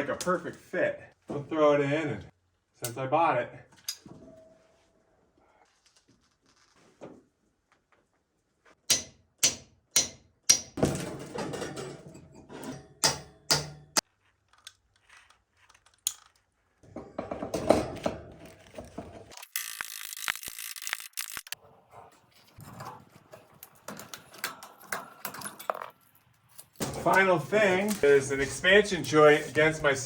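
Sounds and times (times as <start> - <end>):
scraping and rustling: 5.6 - 7.4, 14.1 - 19.4.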